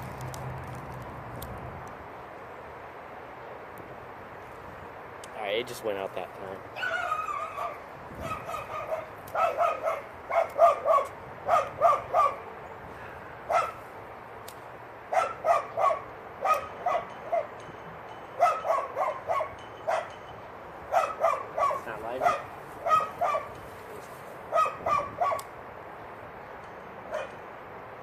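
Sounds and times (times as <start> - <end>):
dog barking: 6.8 - 12.4, 13.5 - 13.8, 15.1 - 17.5, 18.4 - 20.1, 20.9 - 23.5, 24.5 - 25.4, 27.1 - 27.4.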